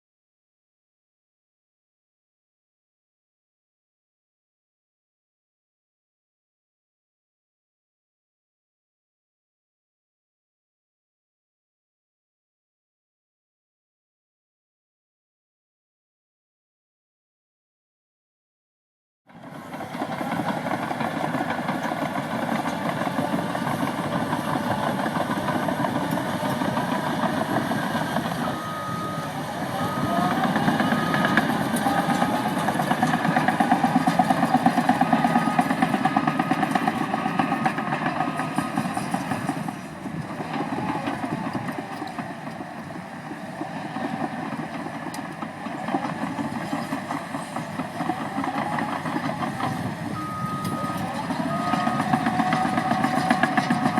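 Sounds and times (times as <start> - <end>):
loader diesel engine running: 19.4 - 53.9
reverse alarm beeping: 26.0 - 33.3, 50.1 - 53.9.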